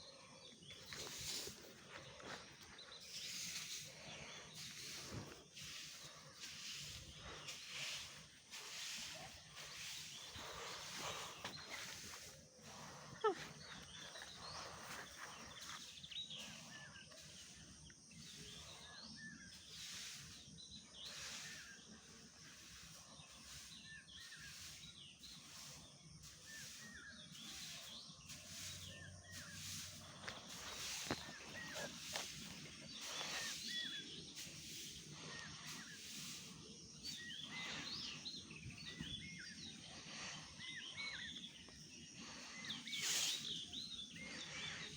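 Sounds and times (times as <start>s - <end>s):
small birds chirping: 0.0s - 44.9s.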